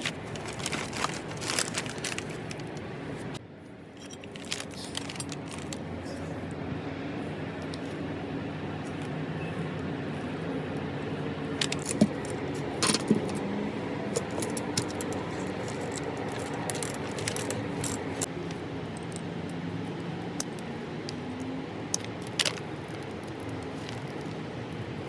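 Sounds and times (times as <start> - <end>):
metal tools clinking: 4.0 - 6.3, 11.6 - 13.4, 14.1 - 18.3.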